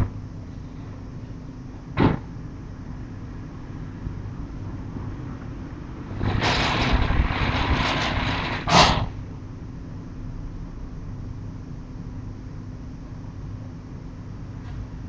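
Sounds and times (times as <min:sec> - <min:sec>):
steady low hum: 0:00.0 - 0:15.0
sliding door banging shut: 0:02.0 - 0:02.3, 0:06.2 - 0:09.2
sliding door rolling on track: 0:06.0 - 0:09.2.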